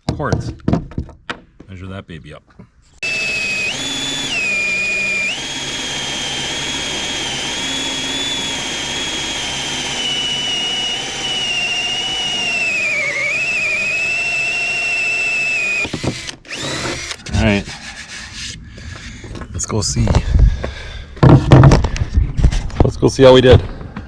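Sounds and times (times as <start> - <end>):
electric power tool cutting: 3.0 - 17.2.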